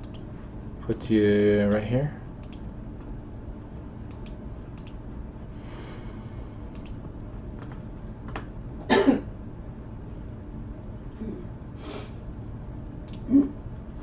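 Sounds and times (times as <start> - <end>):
computer mouse clicks: 0.0 - 0.3, 2.4 - 3.1, 4.1 - 5.0, 6.7 - 7.0
computer keyboard clicks: 2.4 - 2.7, 4.1 - 5.0.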